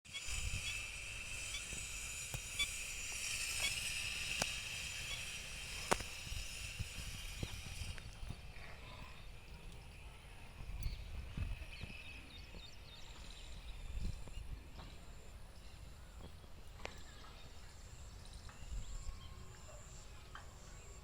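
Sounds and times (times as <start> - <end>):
steady high hiss: 0.1 - 8.2
sharp ticks: 0.1 - 11.8.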